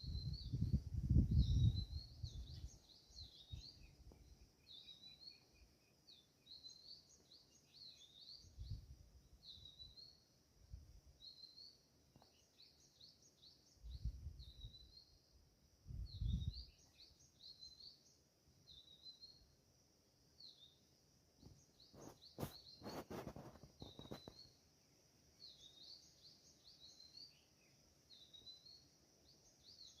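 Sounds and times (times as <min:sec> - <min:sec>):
small songbirds chirping: 0:00.0 - 0:30.0.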